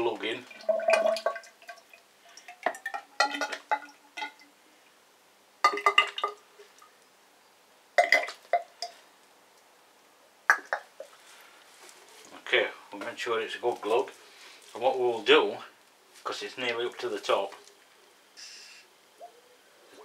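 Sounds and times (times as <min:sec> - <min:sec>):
oil glugging from bottle: 0:00.5 - 0:04.4
bottle clinking against tube: 0:02.6 - 0:04.4.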